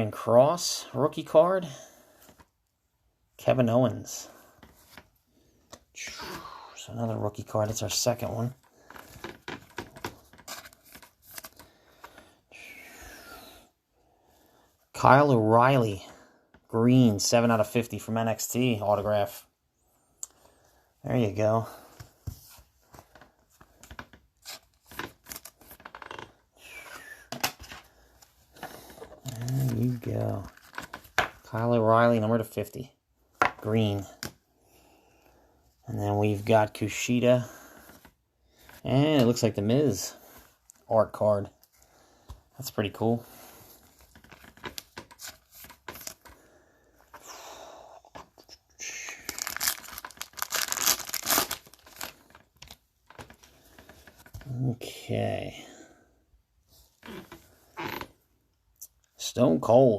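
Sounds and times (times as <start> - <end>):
cards sliding and rubbing: 9.8 - 12.3
wrapper ripping: 49.2 - 52.4
wrapper crinkling: 49.2 - 53.3.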